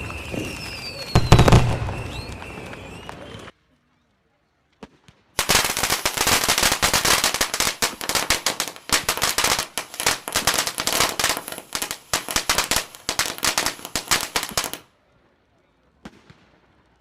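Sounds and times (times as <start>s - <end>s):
firecrackers popping: 0.0s - 3.5s, 4.8s - 14.8s.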